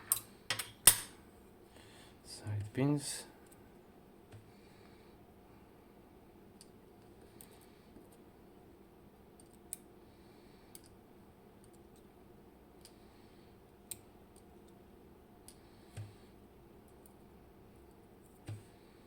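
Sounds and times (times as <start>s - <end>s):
clicks of lock parts and tools: 0.0s - 1.1s.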